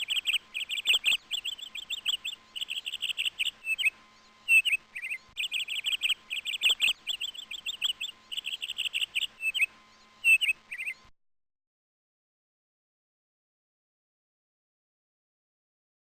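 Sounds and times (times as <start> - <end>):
bird chirping rapidly: 0.0 - 11.1.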